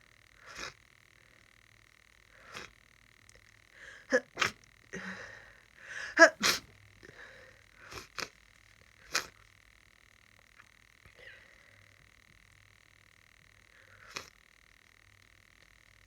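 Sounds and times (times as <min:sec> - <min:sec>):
person sneezing: 0:06.0 - 0:06.7.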